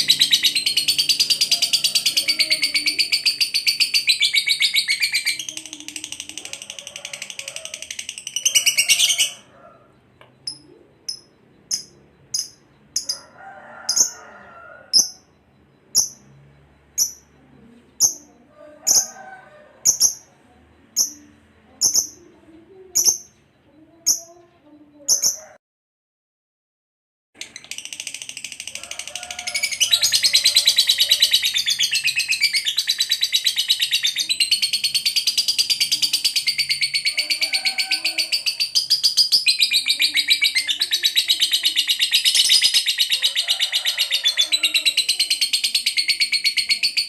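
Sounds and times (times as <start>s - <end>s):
sharp high bird chirps: 0.0s - 9.5s, 10.4s - 13.3s, 15.0s - 17.4s
bird chattering trill: 0.0s - 16.3s, 19.8s - 25.6s, 27.4s - 47.0s.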